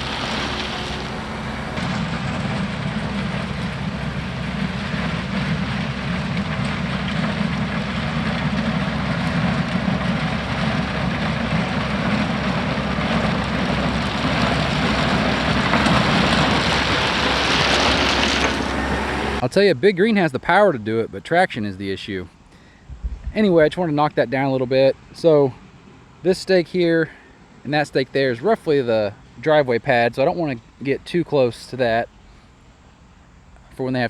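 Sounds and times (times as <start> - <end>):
tractor diesel engine under load: 0.0 - 19.5.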